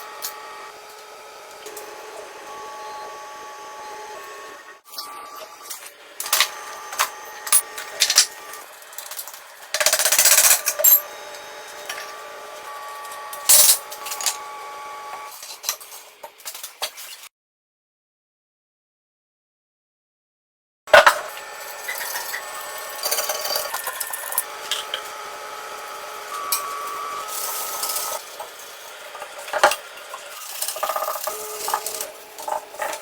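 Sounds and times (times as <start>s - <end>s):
metal tools clinking: 10.2s - 11.1s.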